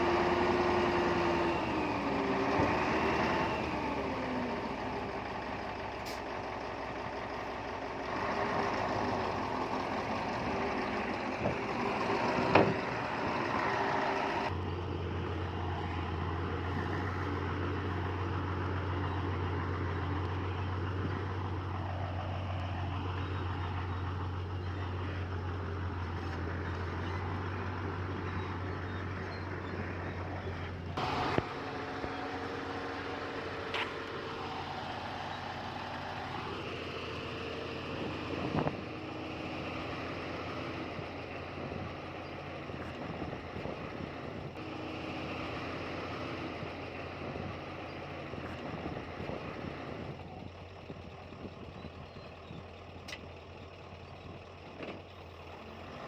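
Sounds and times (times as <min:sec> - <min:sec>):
heavy diesel engines running: 0:00.0 - 0:56.0.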